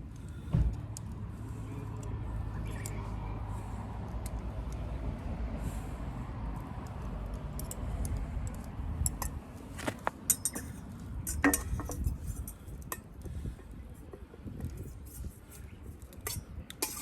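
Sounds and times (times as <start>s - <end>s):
metal cookware clinking: 10.3s - 12.5s, 16.2s - 17.0s.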